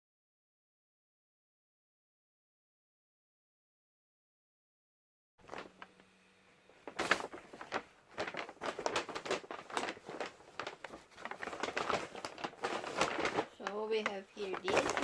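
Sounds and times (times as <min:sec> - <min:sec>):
shopping bags rustling: 0:05.4 - 0:05.9, 0:06.7 - 0:15.0.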